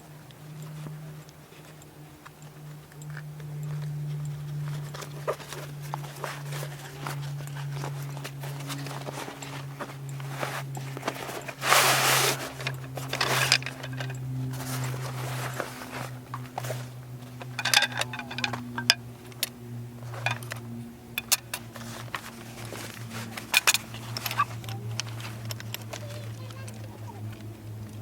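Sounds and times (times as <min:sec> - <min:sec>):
steady low hum: 0:00.0 - 0:28.0
clicks and clatters of handling: 0:00.6 - 0:28.0
rustling: 0:10.3 - 0:19.0.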